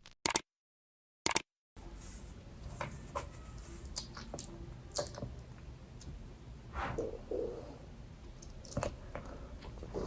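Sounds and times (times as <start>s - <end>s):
sharp clicks: 0.0s - 0.4s, 1.2s - 1.5s.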